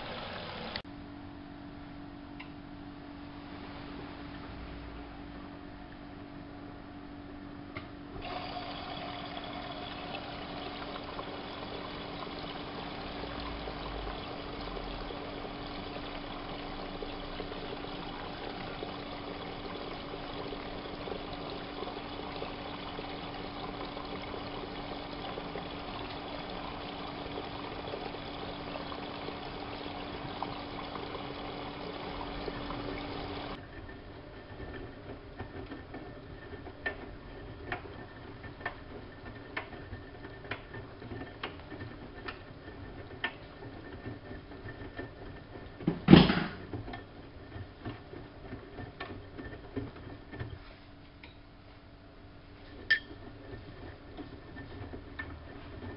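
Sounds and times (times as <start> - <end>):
inlet valve hum: 7.7 - 35.3.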